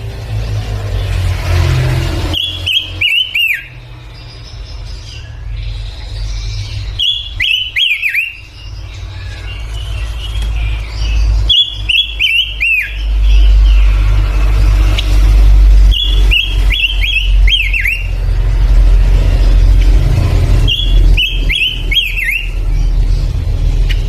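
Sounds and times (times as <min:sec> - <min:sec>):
songbird singing whistled notes: 0:02.3 - 0:14.2, 0:14.9 - 0:18.2, 0:20.5 - 0:24.0
steady low rumble: 0:12.9 - 0:24.0.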